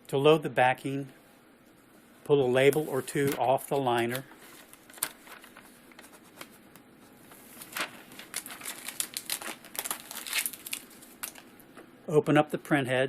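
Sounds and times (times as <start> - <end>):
paper labels peeling and crinkling: 2.6 - 6.6, 7.3 - 11.5.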